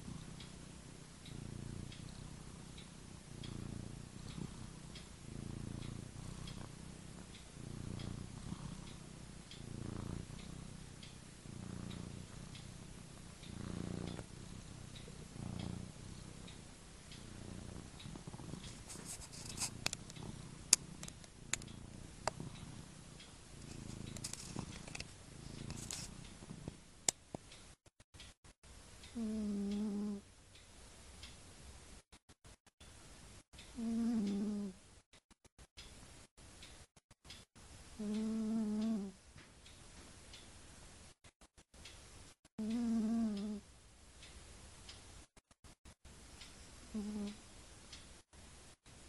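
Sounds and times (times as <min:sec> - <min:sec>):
cat snoring: 0:00.0 - 0:00.6, 0:01.3 - 0:26.8, 0:29.1 - 0:30.2, 0:33.8 - 0:34.8, 0:38.0 - 0:39.2, 0:42.6 - 0:43.6, 0:46.9 - 0:47.4.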